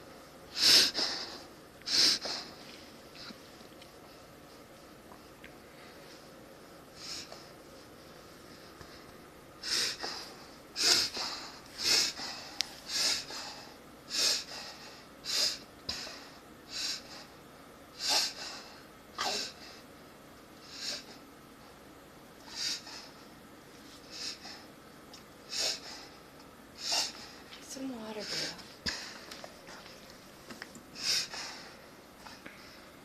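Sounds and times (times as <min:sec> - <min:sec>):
dog breathing noisily through nose: 0:08.6 - 0:17.4, 0:18.0 - 0:19.8, 0:22.4 - 0:23.2, 0:24.0 - 0:24.7, 0:25.5 - 0:27.5, 0:31.0 - 0:32.8.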